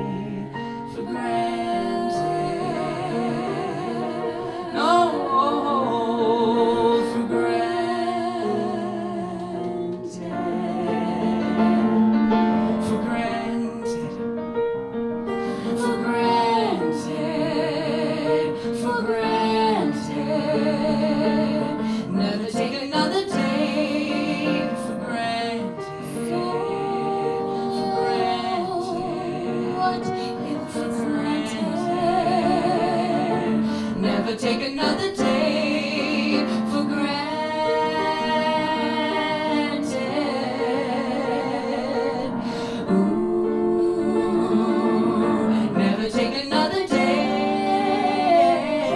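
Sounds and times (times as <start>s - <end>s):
woman singing with vibrato: 15.6s - 48.9s.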